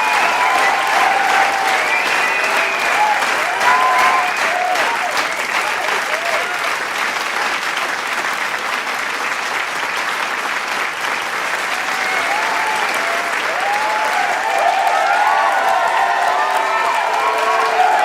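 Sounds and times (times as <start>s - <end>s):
cheers and shouts: 0.0s - 6.8s, 11.6s - 18.0s
crowd applauding: 0.0s - 18.0s.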